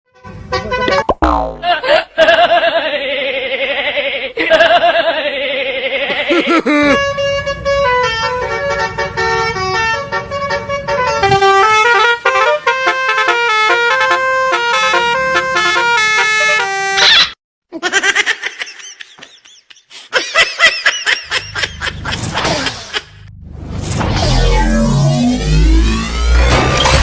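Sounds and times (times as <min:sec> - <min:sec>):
wavering bus horn blasts: 0:00.1 - 0:01.0, 0:06.9 - 0:17.1
horn playing tune: 0:10.9 - 0:17.0.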